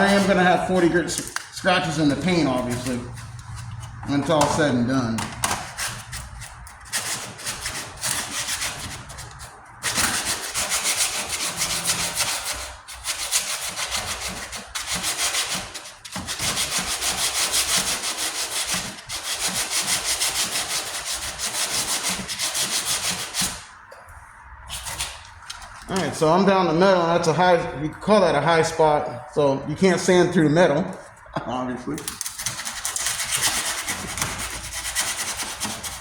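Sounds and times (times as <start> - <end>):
sandpaper rubbing on metal: 0.0 - 1.0, 1.7 - 4.6, 5.6 - 23.7, 24.7 - 25.7, 32.2 - 36.0.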